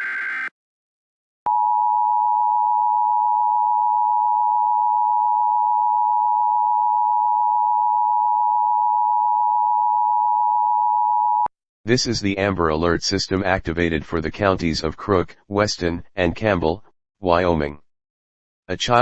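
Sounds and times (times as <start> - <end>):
two-tone alarm tone: 0.0 - 0.5, 1.5 - 11.5.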